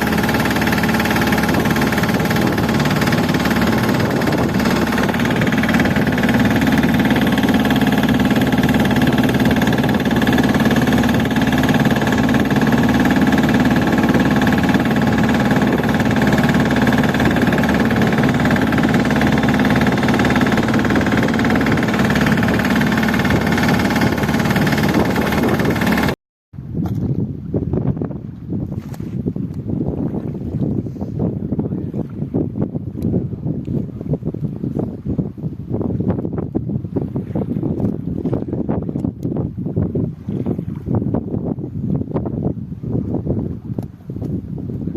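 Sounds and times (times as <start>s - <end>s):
boat engine droning: 0.0s - 26.2s.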